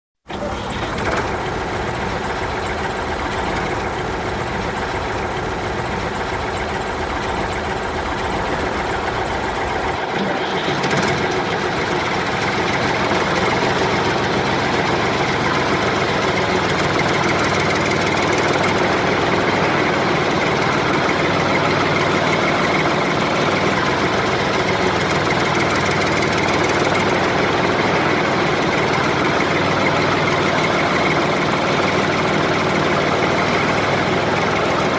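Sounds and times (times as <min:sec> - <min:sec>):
tractor engine running: 0:00.3 - 0:34.9.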